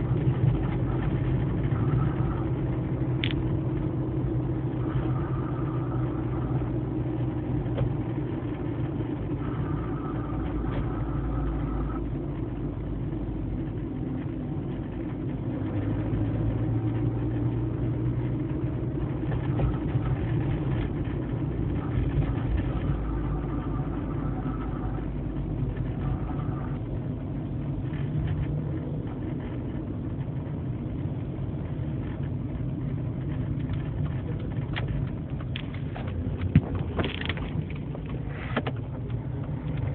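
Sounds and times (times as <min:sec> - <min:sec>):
higher wheel noise tone: 0:00.0 - 0:08.2, 0:09.2 - 0:12.3, 0:21.7 - 0:27.0
car engine rumble: 0:00.0 - 0:39.9.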